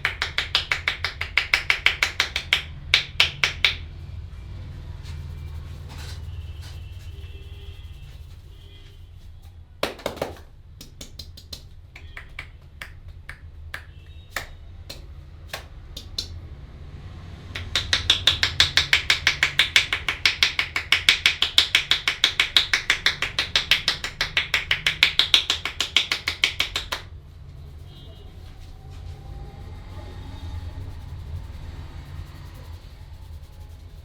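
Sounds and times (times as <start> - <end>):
hands slapping on a head: 0.0 - 3.9, 9.8 - 16.4, 17.6 - 27.1, 33.5 - 34.0.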